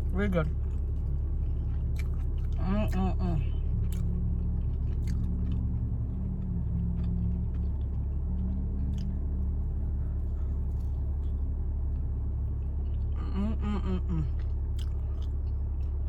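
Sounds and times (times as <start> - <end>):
person chewing food: 0.0 - 13.2, 14.2 - 16.0
steady low rumble: 0.0 - 16.0
faint eating clicks: 0.3 - 13.2, 14.3 - 16.0
person humming: 13.2 - 14.4.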